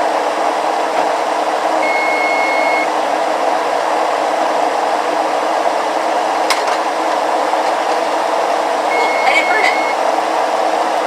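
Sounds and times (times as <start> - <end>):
electronic beep: 1.8 - 2.9, 8.9 - 10.0.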